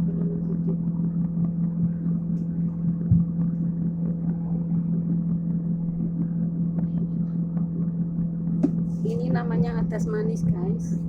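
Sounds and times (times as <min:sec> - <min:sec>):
steady low hum: 0:00.0 - 0:11.0
short knock: 0:08.6 - 0:08.8.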